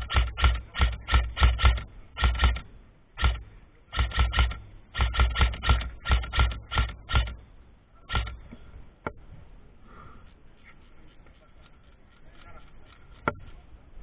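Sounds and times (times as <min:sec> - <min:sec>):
airsoft gun firing: 0:00.0 - 0:07.4, 0:08.1 - 0:08.4.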